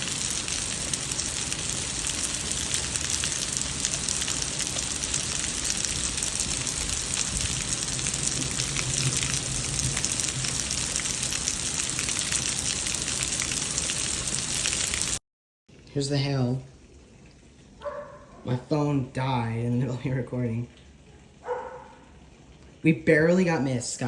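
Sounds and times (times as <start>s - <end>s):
hailstones ticking: 0.0s - 15.2s
heavy rain hissing: 0.0s - 15.2s.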